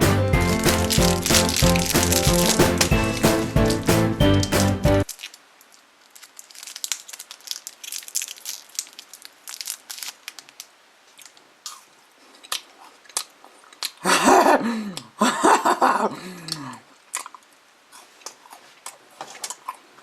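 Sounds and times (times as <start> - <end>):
foil wrapper crinkling: 0.4 - 11.5.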